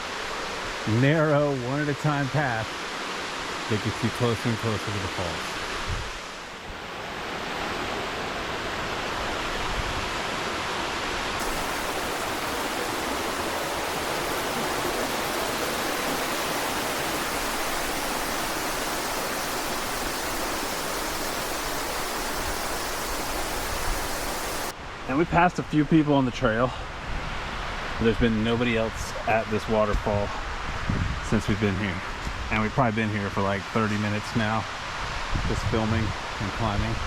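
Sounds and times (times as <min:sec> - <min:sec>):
waterfall rushing: 0:00.0 - 0:25.4.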